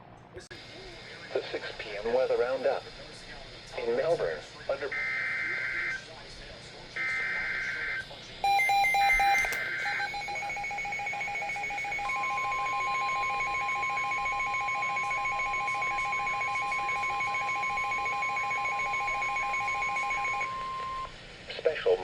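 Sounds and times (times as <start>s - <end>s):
steady warning alarm tone: 0.6s - 21.2s
rapidly pulsing alarm beep: 1.6s - 6.2s, 6.9s - 21.2s
data warble: 7.7s - 21.1s.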